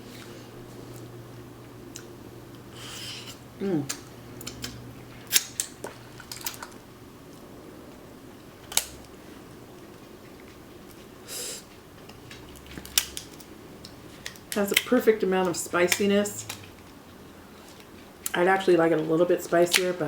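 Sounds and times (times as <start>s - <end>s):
crab legs cracking: 3.8s - 6.8s, 12.1s - 15.0s.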